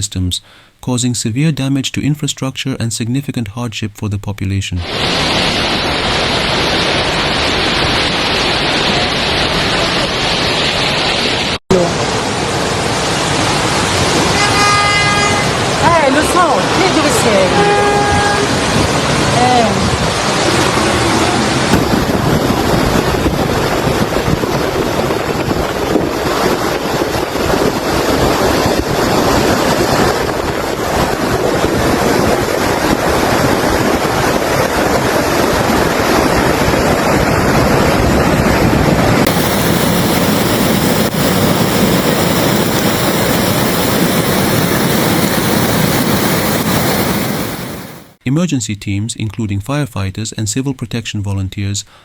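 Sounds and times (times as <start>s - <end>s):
floodwater rushing: 4.9s - 14.4s, 15.4s - 36.6s, 39.3s - 48.2s
wind buffeting microphone: 18.1s - 48.1s.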